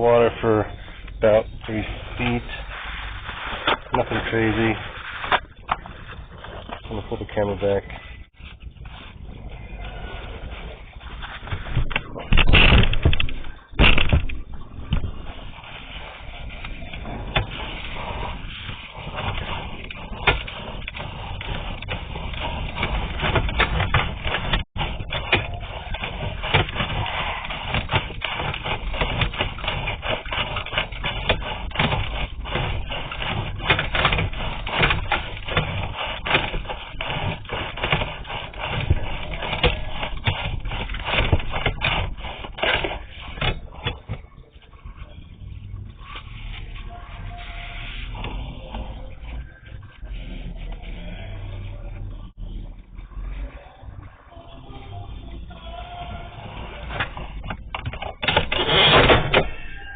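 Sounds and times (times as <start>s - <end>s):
cable scraping and clicking in pipe: 0.0s - 59.9s.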